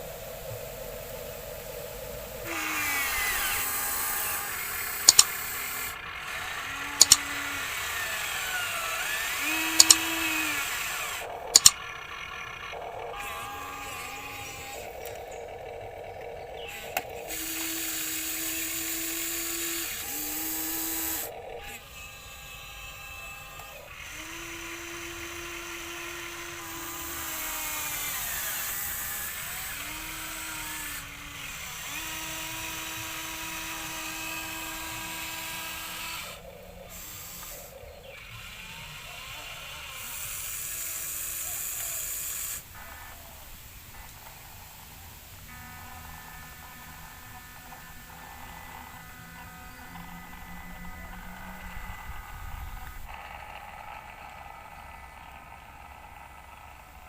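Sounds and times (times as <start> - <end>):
small electric gear motors whining: 0.0 - 57.0
sharp clicks: 2.4 - 21.7.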